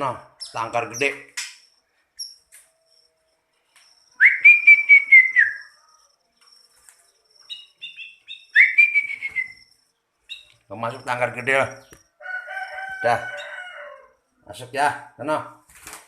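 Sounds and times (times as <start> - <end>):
long sliding whistled notes: 4.2 - 5.7, 8.5 - 9.7.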